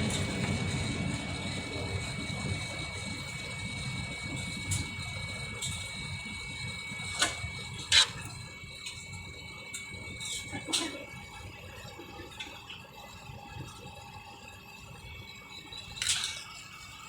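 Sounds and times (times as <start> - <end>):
airliner cabin hum: 0.0 - 11.4
faint high whine: 0.0 - 17.0.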